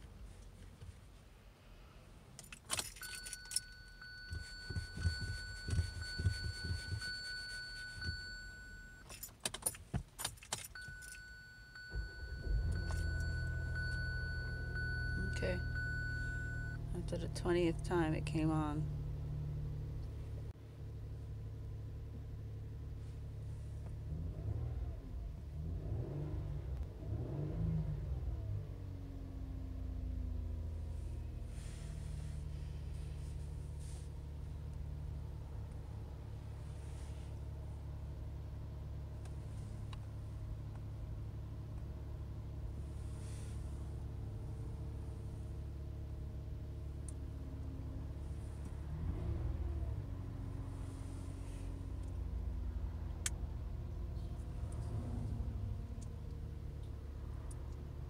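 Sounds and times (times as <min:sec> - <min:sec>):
car keys jangling and clicking: 0:02.3 - 0:16.8
car ignition failing to start: 0:02.6 - 0:16.8
car engine revving and idling: 0:02.8 - 0:09.0, 0:10.5 - 0:58.0
high dashboard warning tone: 0:02.8 - 0:09.3, 0:10.6 - 0:18.8.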